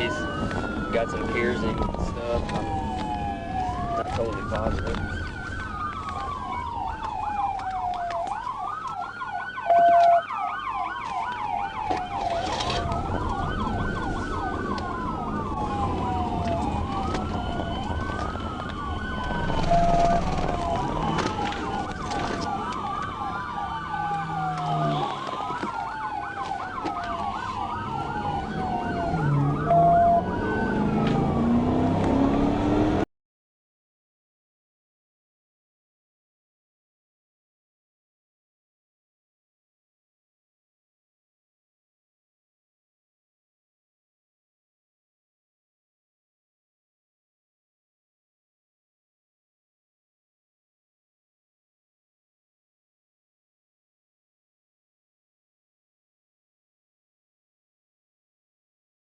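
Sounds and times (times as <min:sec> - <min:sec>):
siren warble: 0:00.0 - 0:33.0
police siren wailing: 0:00.0 - 0:33.1
loud steady beep: 0:09.7 - 0:10.2
low engine-like pitch rising: 0:12.8 - 0:25.2, 0:27.5 - 0:33.0.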